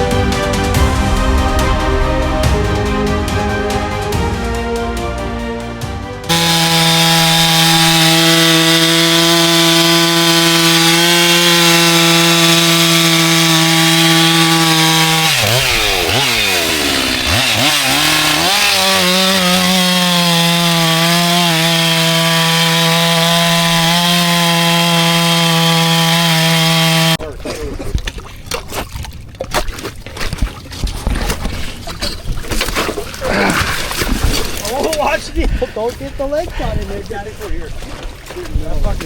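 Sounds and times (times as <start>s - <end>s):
chainsaw sawing through ice: 6.3s - 27.2s.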